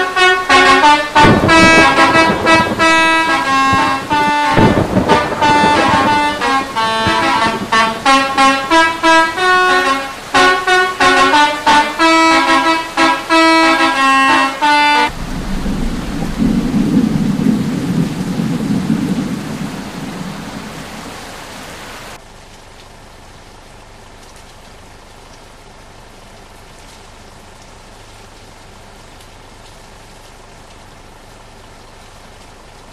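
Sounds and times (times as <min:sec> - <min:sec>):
multi-tone air horn tune: 0:00.0 - 0:15.2
bus engine and tyres rumbling: 0:00.0 - 0:22.2.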